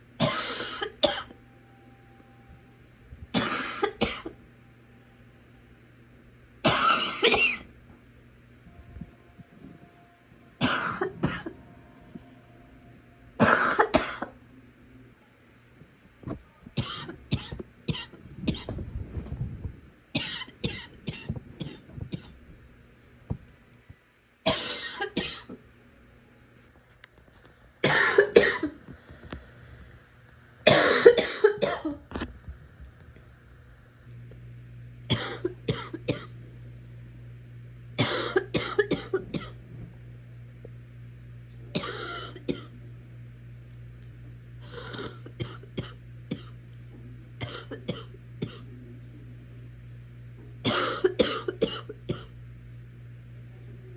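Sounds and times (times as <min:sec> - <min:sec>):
girl coughing: 0:00.2 - 0:01.3, 0:03.4 - 0:04.3, 0:06.7 - 0:07.6, 0:10.6 - 0:11.6, 0:13.4 - 0:14.3, 0:16.8 - 0:18.7, 0:20.2 - 0:22.3, 0:24.5 - 0:25.5, 0:27.8 - 0:28.8, 0:30.7 - 0:32.0, 0:35.1 - 0:36.3, 0:38.0 - 0:39.6, 0:41.8 - 0:42.7, 0:44.7 - 0:46.6, 0:47.4 - 0:48.6, 0:50.6 - 0:52.3.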